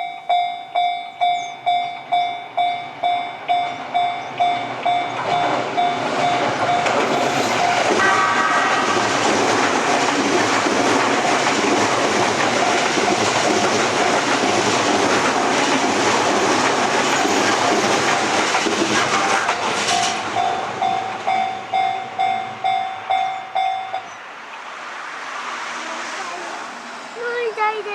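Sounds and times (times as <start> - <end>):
level-crossing warning bell: 0.0 - 24.2
train wheels rushing: 1.2 - 27.9
train horn: 7.9 - 9.2.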